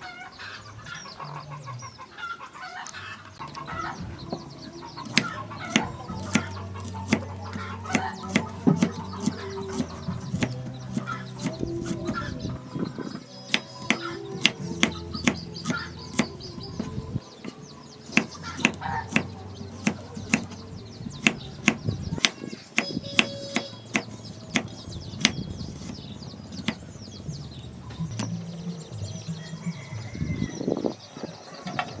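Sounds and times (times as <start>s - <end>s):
soft background music: 0.1s - 32.0s
knife chopping: 5.0s - 12.3s, 13.5s - 17.0s, 18.1s - 26.8s.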